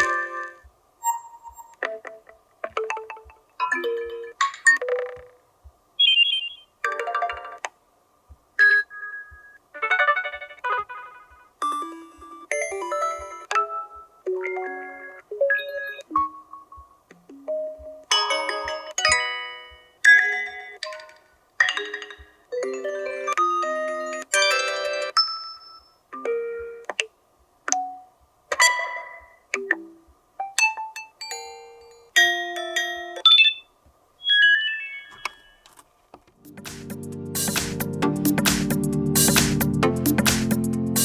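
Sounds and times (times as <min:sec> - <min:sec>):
phone notification tones: 0:34.2 - 0:35.6.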